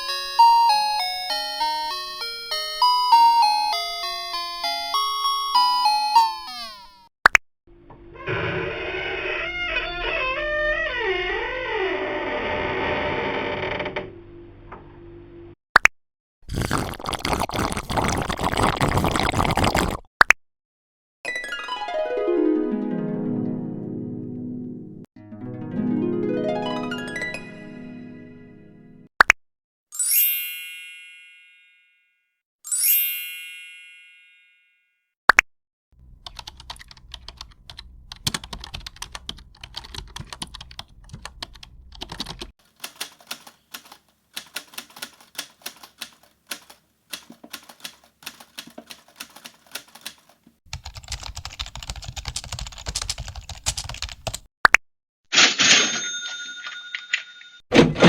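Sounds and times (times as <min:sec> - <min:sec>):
keyboard typing: 0:36.1 - 0:54.5
bell-like ringing: 0:55.8 - 0:57.6.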